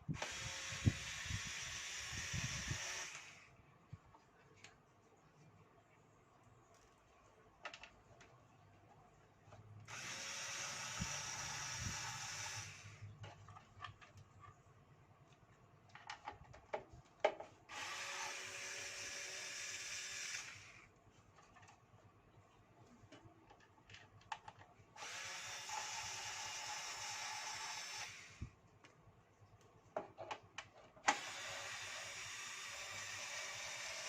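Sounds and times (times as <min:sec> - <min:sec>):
cordless drill running: 0:00.1 - 0:03.5, 0:09.9 - 0:13.1, 0:17.7 - 0:20.9, 0:25.0 - 0:28.5, 0:31.1 - 0:34.0.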